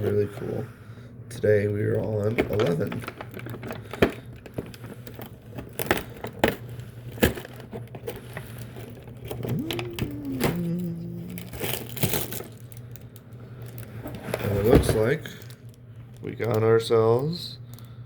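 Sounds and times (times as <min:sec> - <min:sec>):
cardboard cracking and tearing: 0:09.3 - 0:12.7
person humming: 0:09.4 - 0:11.8.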